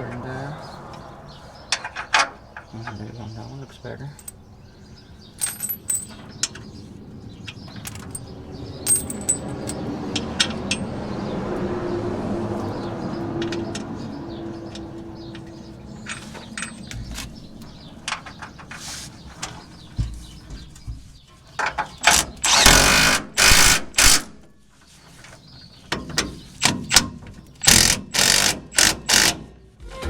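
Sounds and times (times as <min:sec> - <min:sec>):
tools clinking against metal: 0:04.1 - 0:04.4, 0:05.4 - 0:06.7, 0:07.4 - 0:11.0, 0:13.4 - 0:18.8.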